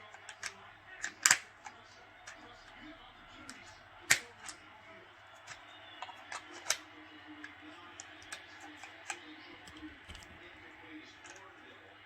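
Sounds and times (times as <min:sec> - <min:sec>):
cartridges clicking into magazine: 0:00.1 - 0:01.5, 0:03.5 - 0:04.6.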